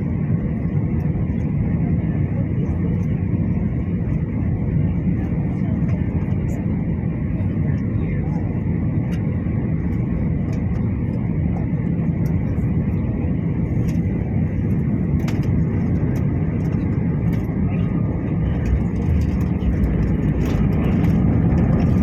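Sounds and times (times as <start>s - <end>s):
airliner cabin rumble: 0.0s - 22.0s.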